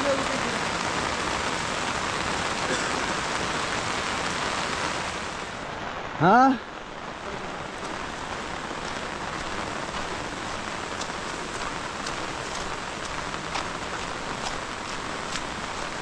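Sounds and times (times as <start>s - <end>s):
heavy rain falling: 0.0s - 16.0s
sharp drips landing close: 8.8s - 16.0s.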